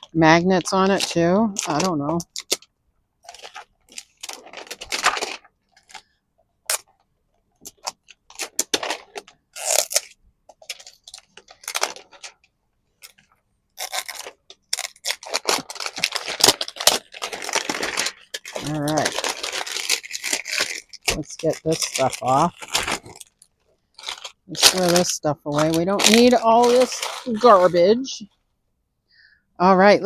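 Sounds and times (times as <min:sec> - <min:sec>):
packaging rustling: 0:00.9 - 0:06.1, 0:07.6 - 0:28.1.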